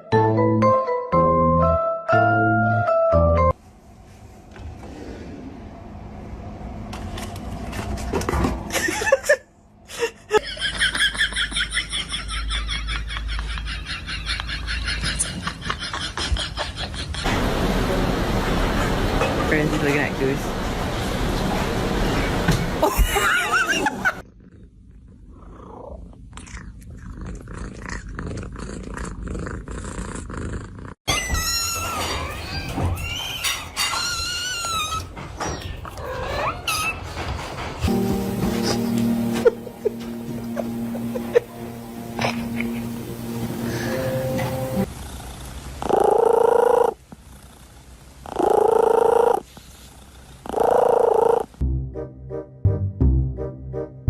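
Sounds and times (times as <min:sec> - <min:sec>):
cat purring: 0:24.2 - 0:31.0, 0:44.8 - 0:51.5
cat calling: 0:48.3 - 0:49.4, 0:50.5 - 0:51.5.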